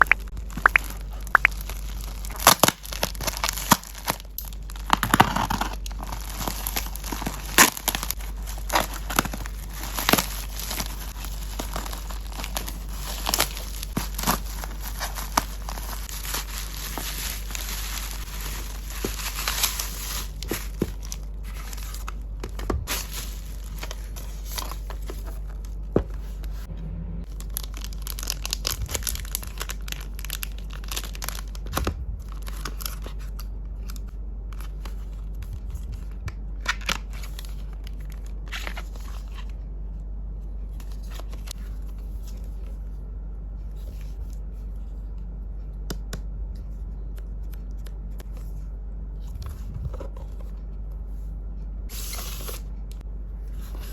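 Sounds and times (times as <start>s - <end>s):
packaging tearing and crinkling: 0.0s - 25.7s, 27.3s - 34.9s
low steady hum: 0.0s - 53.9s.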